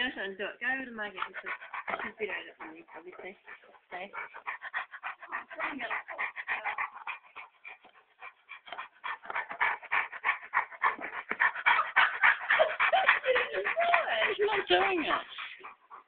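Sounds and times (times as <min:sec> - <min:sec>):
dog panting: 0:00.0 - 0:16.0
dog whimpering: 0:11.7 - 0:16.0.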